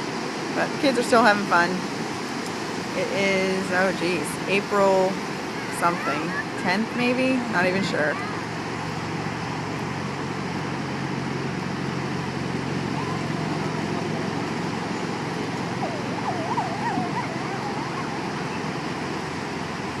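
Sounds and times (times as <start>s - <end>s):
surf rushing: 0.0s - 20.0s
wind: 0.0s - 20.0s
wavering high-pitched sound: 12.8s - 19.3s.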